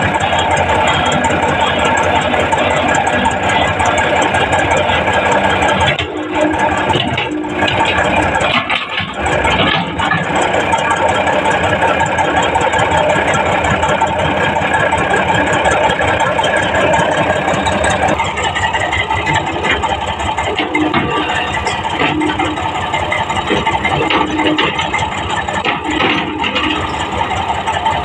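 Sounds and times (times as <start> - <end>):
heavy diesel engine running: 0.0 - 28.0.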